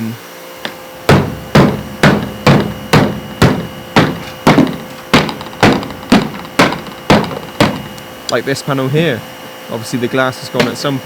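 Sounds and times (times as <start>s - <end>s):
hammer knocking: 1.0s - 8.2s, 10.6s - 11.0s.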